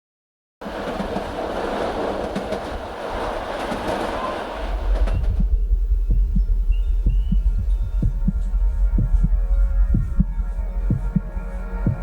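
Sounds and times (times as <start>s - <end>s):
dense rushing rumble: 0.6s - 12.0s
deep throbbing bass pulse: 4.8s - 12.0s.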